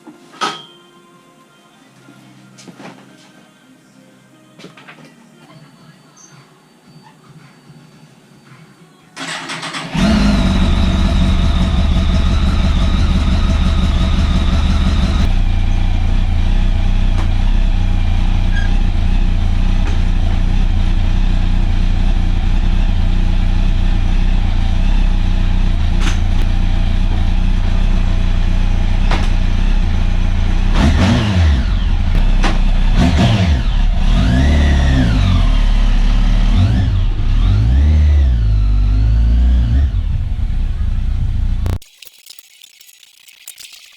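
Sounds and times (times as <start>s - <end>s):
engine cranking: 9.2s - 15.4s
car engine revving: 9.9s - 41.8s
car engine idling: 10.4s - 30.8s.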